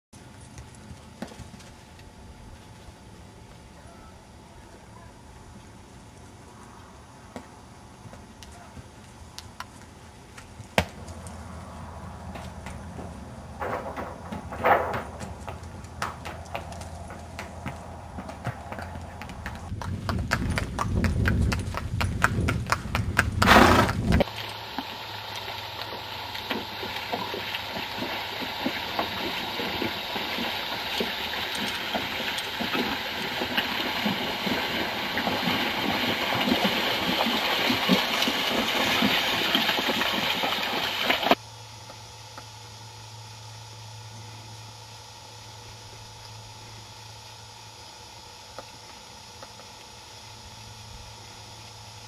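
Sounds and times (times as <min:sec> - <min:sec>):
horse hooves striking ground: 0:00.2 - 0:03.6, 0:07.3 - 0:41.4.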